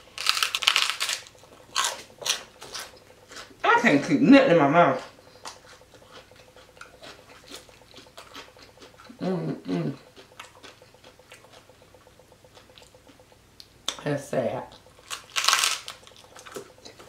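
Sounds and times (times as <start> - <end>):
chewing crunchy pork rinds: 0.0 - 4.2, 4.8 - 17.0
person humming: 9.1 - 10.1.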